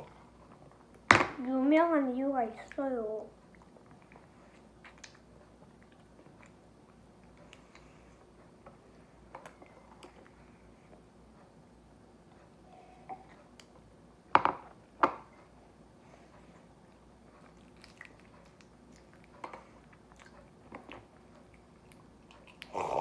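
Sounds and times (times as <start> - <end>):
person chewing: 17.4 - 23.0.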